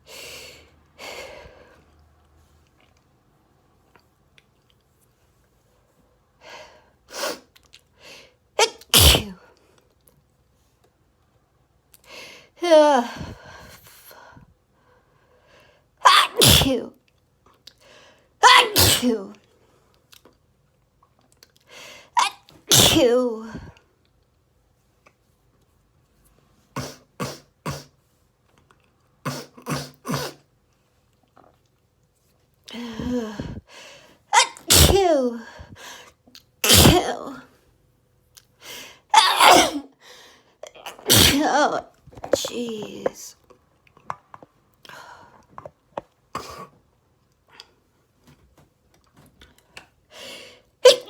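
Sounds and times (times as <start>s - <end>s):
person sneezing loudly: 8.6s - 9.4s, 16.0s - 16.9s, 18.4s - 19.3s, 22.2s - 23.7s, 26.8s - 27.9s, 29.3s - 30.4s, 34.3s - 35.6s, 36.6s - 37.4s, 39.1s - 39.9s, 40.8s - 42.8s
breathy build-up before sneeze: 38.7s - 39.9s.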